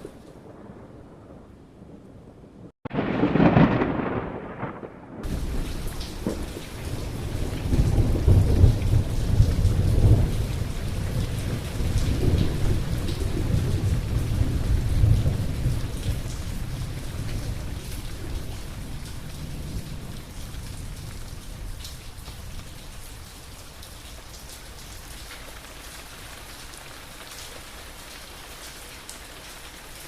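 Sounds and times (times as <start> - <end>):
low rolling thunder: 0.0 - 24.1
loud thunderclap: 0.1 - 21.8
heavy rain hissing: 5.2 - 30.0.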